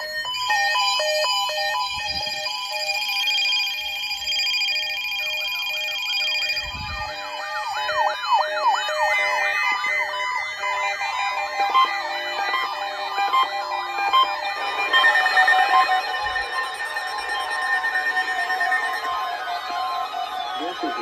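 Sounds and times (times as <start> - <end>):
steady high alert tones: 0.0 - 21.0
rising and falling siren sweeps: 5.0 - 21.0.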